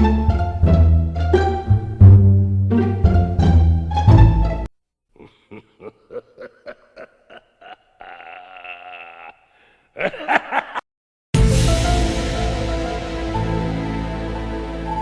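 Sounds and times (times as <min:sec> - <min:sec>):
music: 0:00.0 - 0:04.7, 0:11.4 - 0:15.0
laughter sound effect: 0:05.2 - 0:09.4, 0:10.0 - 0:10.8.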